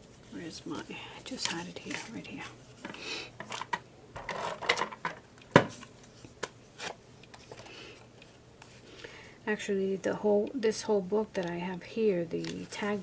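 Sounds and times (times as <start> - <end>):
objects set down on a table: 2.8 - 5.8.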